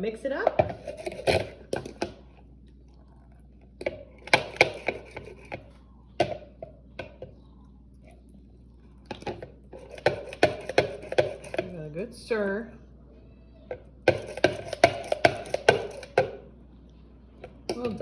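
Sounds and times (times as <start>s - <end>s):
utensil clacking against mixing bowl: 3.8s - 7.3s, 9.1s - 11.8s, 14.0s - 16.4s, 17.4s - 18.0s.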